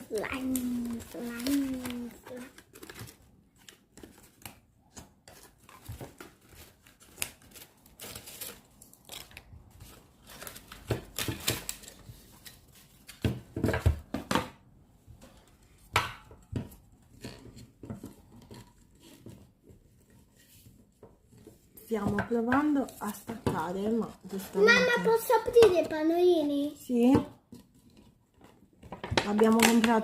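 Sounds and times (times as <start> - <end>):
packaging rustling and clicking: 0.0 - 13.8.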